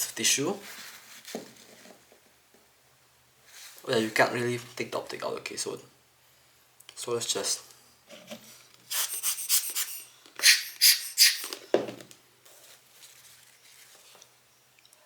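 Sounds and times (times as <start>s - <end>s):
tissue paper rustling: 12.6s - 14.2s.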